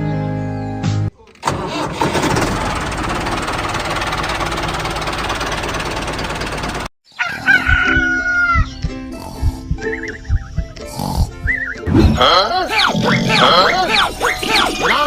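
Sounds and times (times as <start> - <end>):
small engine rattling: 1.3 - 6.9
rooster crowing: 7.1 - 8.8
music with steady beat: 7.6 - 11.9.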